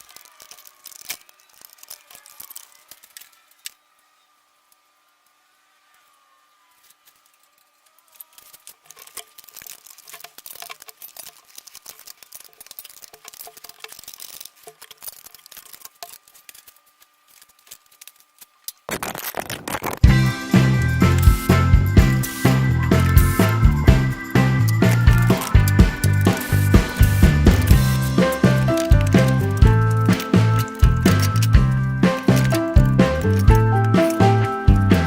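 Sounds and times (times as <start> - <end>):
loud music: 20.0 - 35.0.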